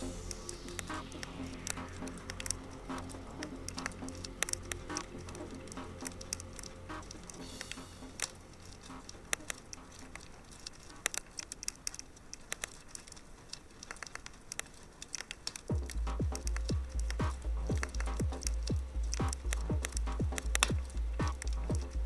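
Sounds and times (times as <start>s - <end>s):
electronic music beat: 0.0s - 10.2s, 15.7s - 22.0s
fire crackling: 0.0s - 22.0s.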